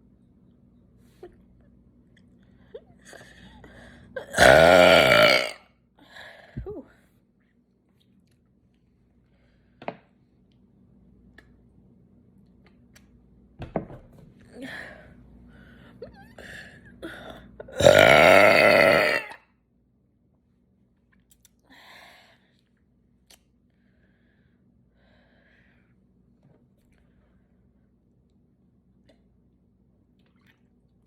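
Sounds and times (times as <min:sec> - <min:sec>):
person burping loudly: 0:04.2 - 0:05.6, 0:17.7 - 0:19.4.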